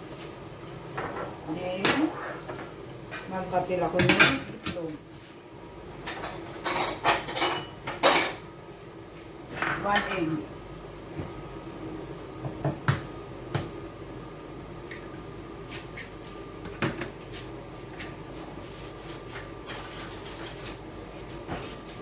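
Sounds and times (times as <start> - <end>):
steady hum: 0.0 - 6.9.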